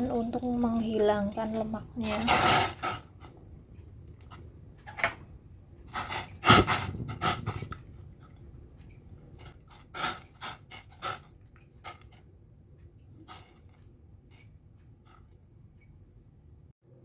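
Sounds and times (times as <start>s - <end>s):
cooking pot knocks and clatter: 4.8s - 5.3s.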